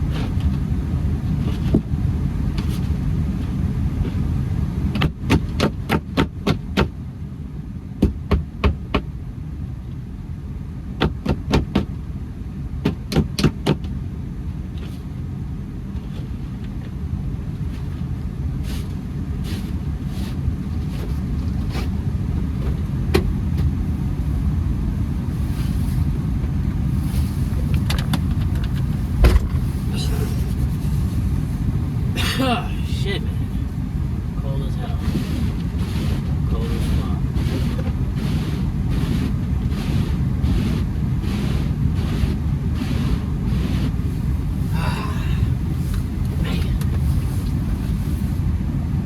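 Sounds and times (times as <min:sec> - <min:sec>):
car engine low rumble: 0:00.0 - 0:49.0
loud knock: 0:29.2 - 0:29.6.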